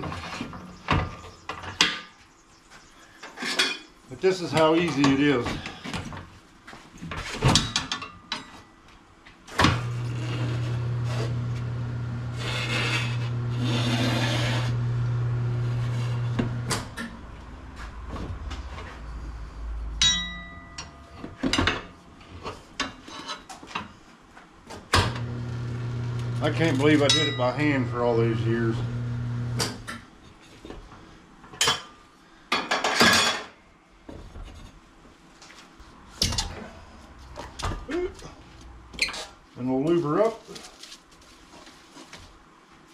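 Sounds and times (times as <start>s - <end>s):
tire changing machine motor humming: 9.8s - 17.1s, 25.0s - 29.9s
rattling metal scrape: 12.3s - 14.8s
metal tools clanking: 26.5s - 28.6s.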